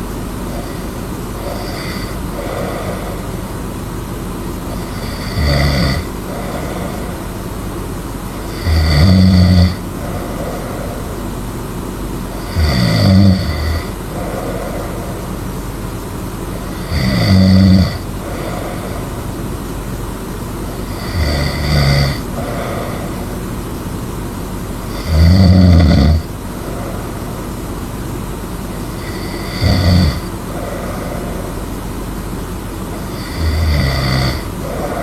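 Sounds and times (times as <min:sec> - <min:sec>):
faint breaths: 0:00.0 - 0:25.2, 0:26.2 - 0:35.0
steady background hiss: 0:00.0 - 0:35.0
rattling snores: 0:00.4 - 0:03.6, 0:04.6 - 0:07.5, 0:08.3 - 0:11.5, 0:12.3 - 0:19.4, 0:20.6 - 0:23.5, 0:24.8 - 0:27.7, 0:28.7 - 0:32.0, 0:32.8 - 0:35.0.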